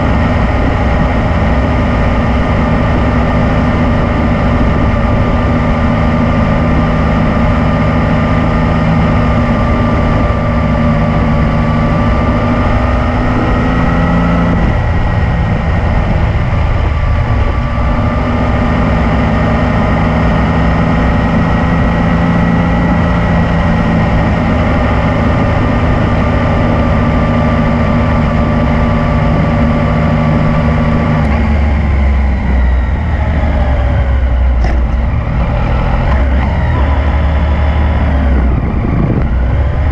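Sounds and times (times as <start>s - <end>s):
motorcycle engine running: 0.0s - 39.9s.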